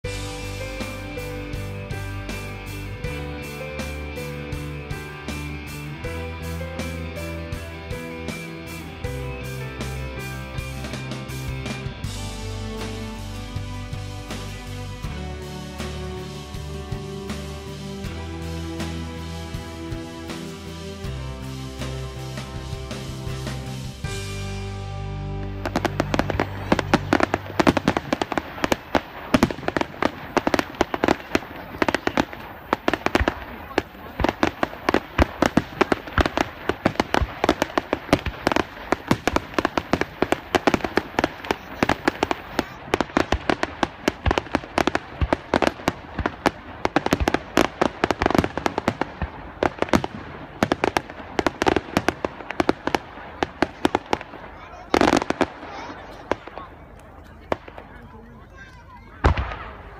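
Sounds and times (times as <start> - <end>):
show music: 0.0 - 59.9
fireworks cracking: 25.4 - 59.9
echoing cracks: 59.2 - 59.9.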